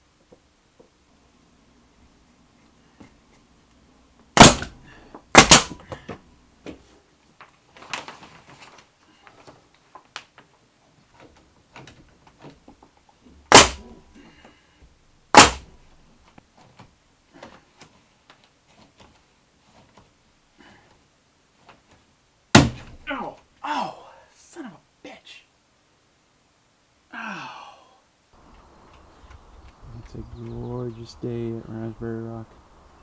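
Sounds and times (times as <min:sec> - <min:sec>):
loud sharp impacts on wood: 0:04.4 - 0:06.2, 0:13.5 - 0:14.0, 0:15.3 - 0:15.8, 0:22.5 - 0:23.1
handling rustles: 0:05.6 - 0:13.0.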